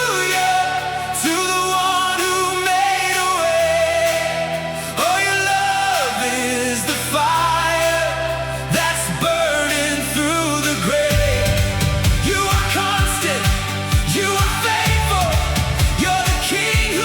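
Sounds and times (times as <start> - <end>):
person singing worship song: 0.0 - 17.0
held bass notes: 7.4 - 17.0.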